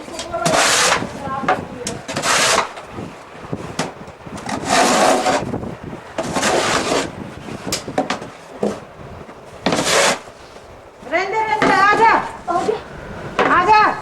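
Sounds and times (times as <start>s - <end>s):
snow being scraped: 0.0s - 2.8s, 4.5s - 5.6s, 6.2s - 8.8s, 9.6s - 13.8s.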